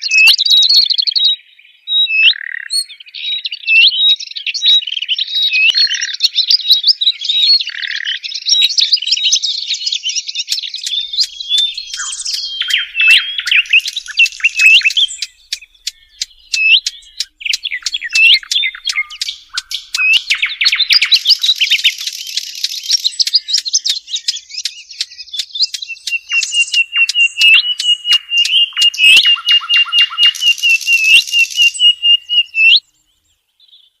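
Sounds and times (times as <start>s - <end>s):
songbirds chirping and trilling: 0.0s - 34.0s
fast repeated short bird notes: 10.9s - 32.8s.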